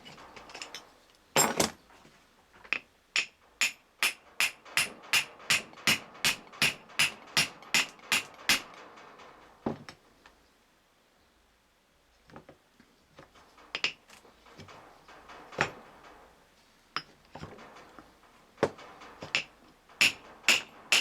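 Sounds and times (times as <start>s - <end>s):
hammer striking metal joint: 3.2s - 8.7s, 18.6s - 21.0s.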